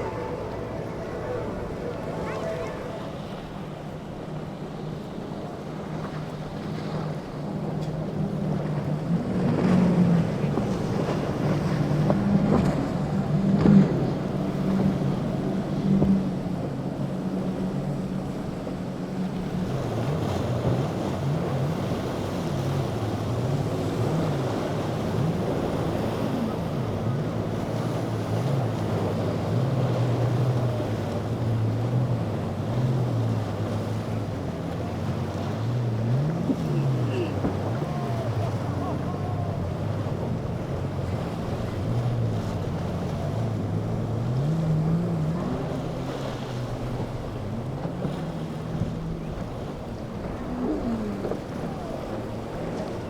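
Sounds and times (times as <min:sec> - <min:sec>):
wind on microphone: 0:00.0 - 0:03.9, 0:19.5 - 0:53.0
motorboat engines running: 0:00.0 - 0:53.0
surf washing: 0:00.0 - 0:53.0.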